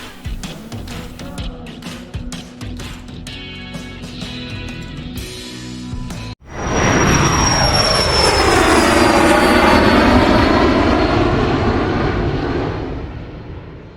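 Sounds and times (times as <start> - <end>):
jet aircraft flying past: 6.4 - 13.9.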